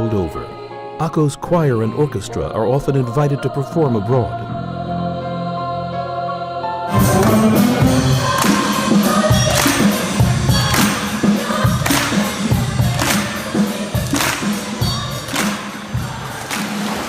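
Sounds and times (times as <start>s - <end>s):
choir singing: 0.0s - 17.0s
orchestra playing: 6.9s - 17.0s
percussion strokes: 6.9s - 17.0s.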